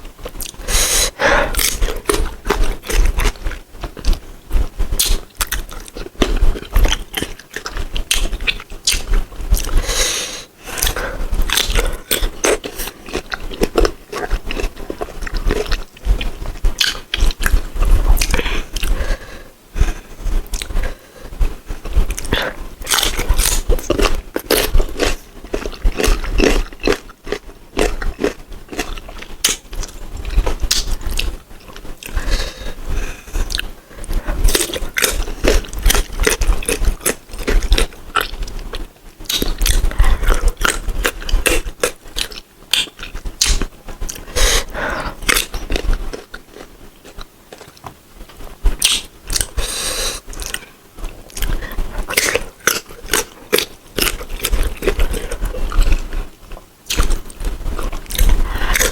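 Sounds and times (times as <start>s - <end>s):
crisp crunching of mango: 22.1s - 32.3s, 34.4s - 44.4s, 45.1s - 48.0s, 48.8s - 58.9s.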